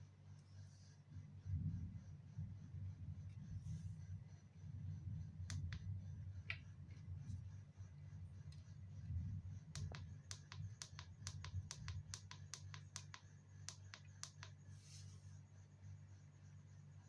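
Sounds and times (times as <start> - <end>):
steady low hum: 0.0 - 17.0
soft hiss: 8.4 - 15.5
quick small sharp clicks: 9.8 - 14.6.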